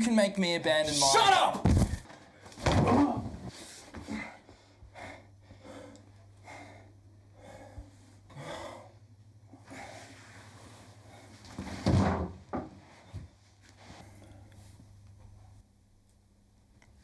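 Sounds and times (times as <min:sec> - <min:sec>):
person breathing heavily and gasping: 0:04.0 - 0:10.2.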